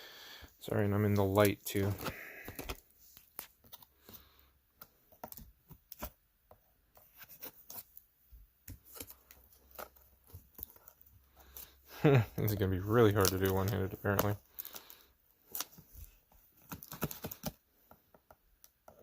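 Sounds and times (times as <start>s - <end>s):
cardboard packaging being opened: 12.1s - 17.6s
cardboard tearing: 16.6s - 17.6s.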